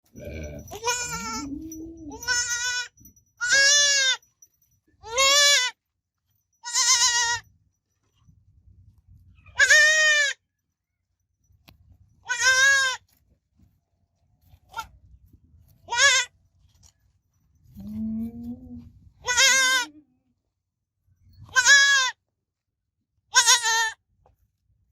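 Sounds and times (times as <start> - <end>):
goat kid bleating: 0.2 - 4.2, 5.0 - 5.8, 6.6 - 7.4, 9.4 - 10.4, 12.2 - 13.2, 15.8 - 16.3, 17.8 - 20.1, 21.4 - 22.2, 23.3 - 24.0.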